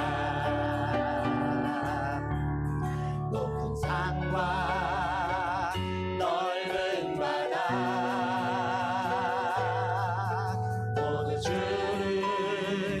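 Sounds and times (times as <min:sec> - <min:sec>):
sustained low chords: 0:00.0 - 0:06.4
person singing with vibrato: 0:00.0 - 0:13.0.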